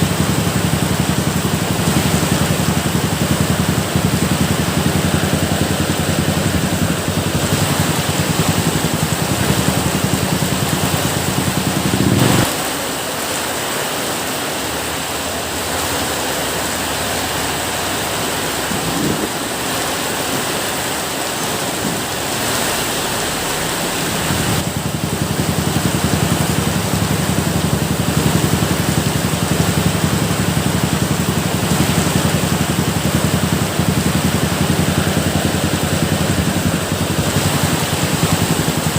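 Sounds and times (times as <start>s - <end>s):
low pulsing rumble: 0.0s - 12.7s, 18.0s - 38.9s
steady rain: 0.0s - 38.9s.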